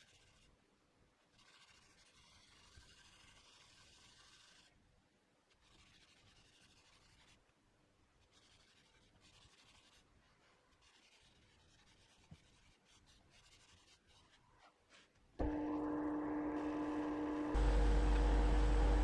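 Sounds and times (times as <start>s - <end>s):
faint scratching: 0.0s - 0.6s, 1.2s - 4.8s, 5.5s - 7.5s, 8.2s - 15.9s.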